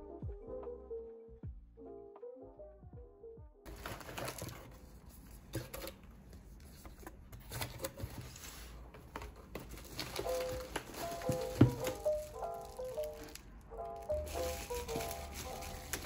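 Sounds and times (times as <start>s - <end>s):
rustling handling noise: 3.7s - 16.0s.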